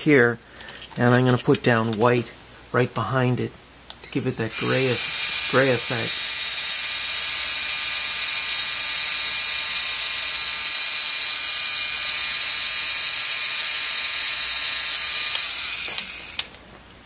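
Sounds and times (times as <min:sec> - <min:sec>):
small motor whirring: 0:04.5 - 0:16.6.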